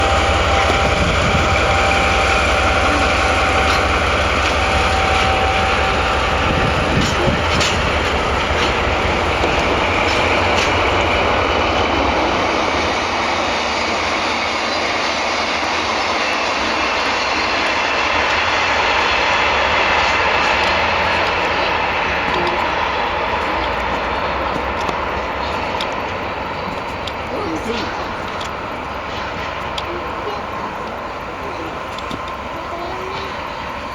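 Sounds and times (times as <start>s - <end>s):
sharp rail clacks: 0.0s - 13.1s
train wheels rumbling on rail: 0.0s - 33.9s.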